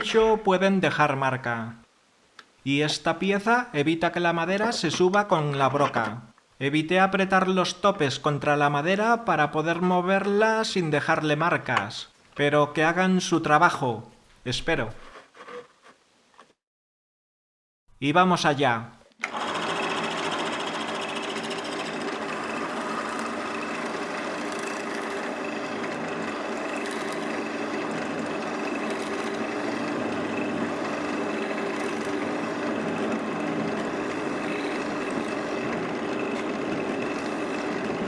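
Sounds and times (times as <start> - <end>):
drill press motor running: 19.2 - 38.0
mortising bit cutting wood: 19.3 - 38.0.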